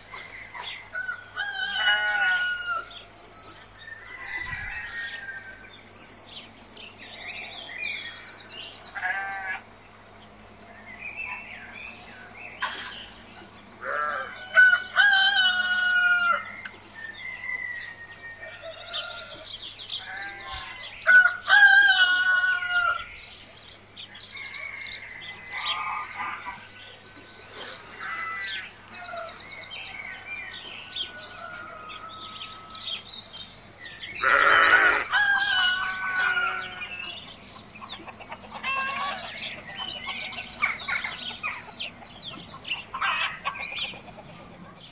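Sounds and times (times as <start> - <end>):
small birds chirping: 0.0 - 1.3, 2.7 - 21.5, 22.3 - 44.9
rooster crowing: 0.9 - 5.8, 13.8 - 19.5, 20.1 - 23.2, 24.2 - 33.1, 34.2 - 37.2
chickens clucking: 12.4 - 16.9, 25.2 - 32.3, 33.4 - 44.9.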